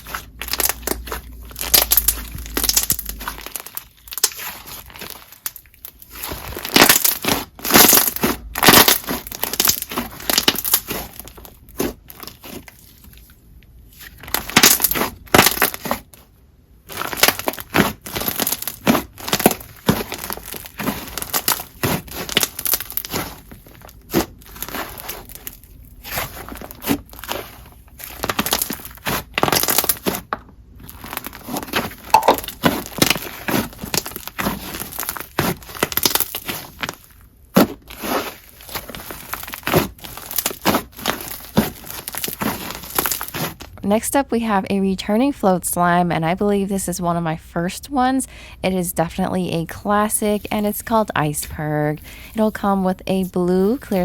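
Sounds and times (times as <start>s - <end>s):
slime crackling and popping: 0.0s - 13.3s, 13.9s - 43.7s.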